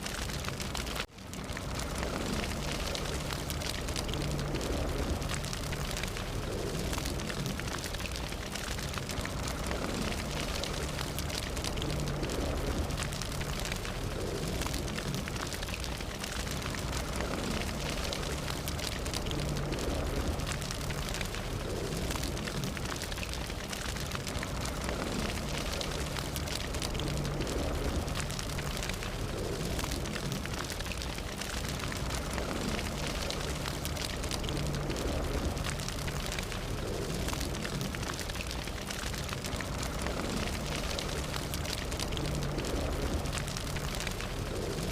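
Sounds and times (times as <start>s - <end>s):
fire crackling and popping: 0.0s - 44.9s.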